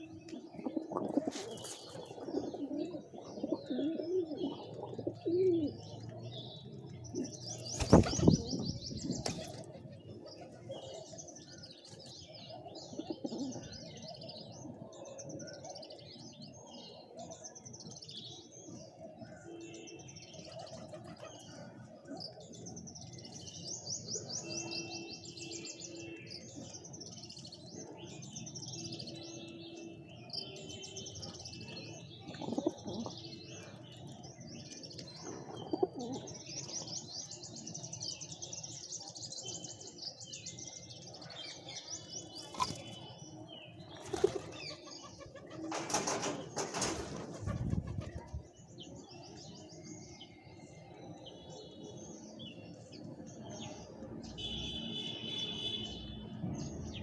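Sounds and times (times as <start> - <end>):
small birds chirping: 0.0 - 57.0
pigeons cooing: 0.2 - 6.0, 12.6 - 14.1, 32.3 - 33.8, 35.3 - 36.4, 44.0 - 48.3.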